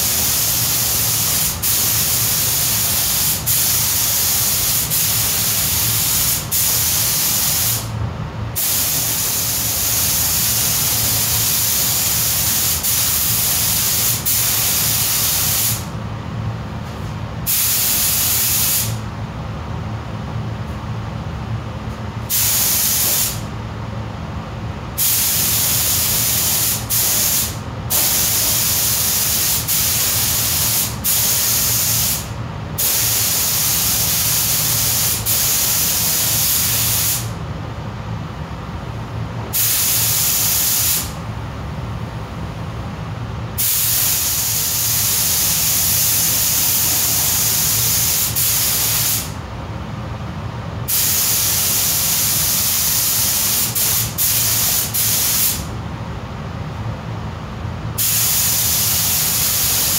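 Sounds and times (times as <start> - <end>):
air spray gun hissing: 0.0 - 7.9, 8.6 - 15.9, 17.5 - 19.0, 22.3 - 23.5, 25.0 - 37.3, 39.5 - 41.2, 43.6 - 49.4, 50.8 - 55.7, 58.0 - 59.9
steady low hum: 0.0 - 58.0.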